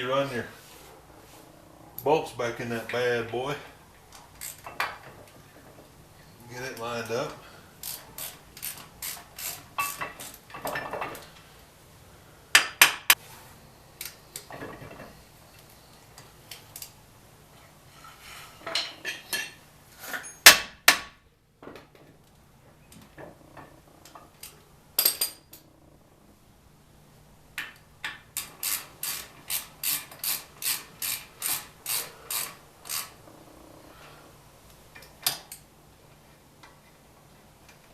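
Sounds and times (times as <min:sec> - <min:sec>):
hand ratchet clicking: 0:04.4 - 0:04.9, 0:07.8 - 0:10.5, 0:28.3 - 0:33.2
metal tools clanking: 0:06.5 - 0:11.3.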